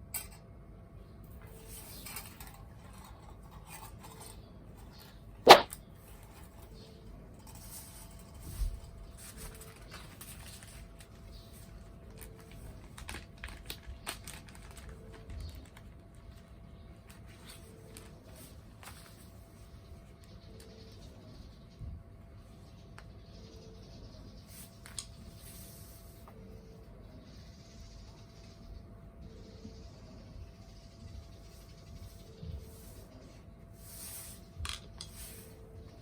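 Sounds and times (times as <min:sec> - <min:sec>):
sharp loud knock: 0:05.5 - 0:05.7.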